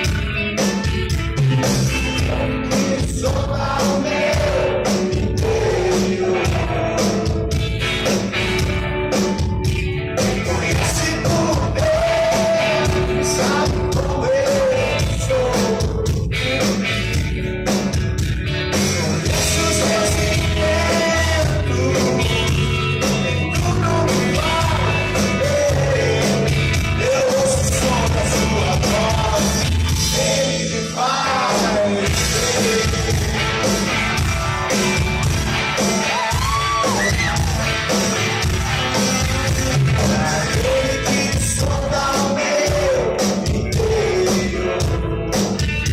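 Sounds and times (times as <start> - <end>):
rock band playing live: 0.0 - 45.9
sung vocals: 2.0 - 7.8, 10.1 - 17.1, 18.8 - 34.3, 38.8 - 45.9.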